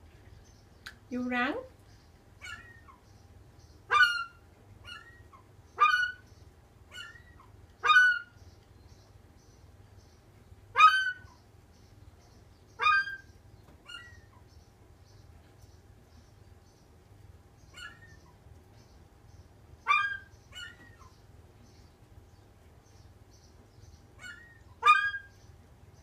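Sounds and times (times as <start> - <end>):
seagull calling: 3.9 - 6.3, 6.9 - 8.4, 10.8 - 11.4, 12.8 - 13.3, 19.8 - 21.1, 24.2 - 25.4.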